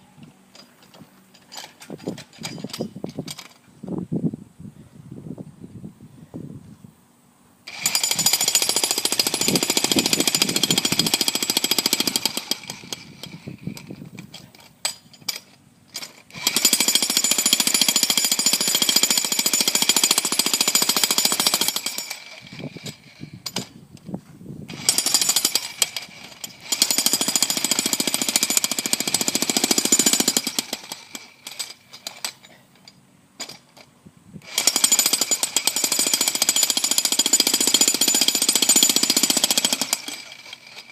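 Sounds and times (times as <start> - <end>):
jackhammer hammering: 7.7 - 14.0, 14.9 - 23.7, 24.7 - 32.6, 34.4 - 40.9.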